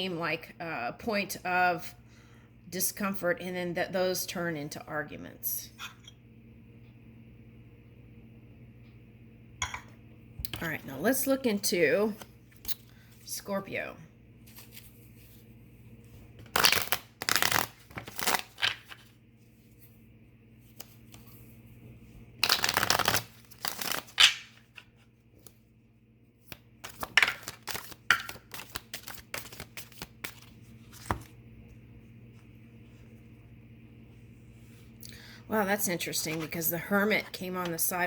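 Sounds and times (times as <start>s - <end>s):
cards being shuffled: 14.4s - 15.5s, 16.3s - 19.8s, 20.6s - 21.5s, 22.4s - 25.6s, 26.4s - 31.4s, 36.2s - 36.7s.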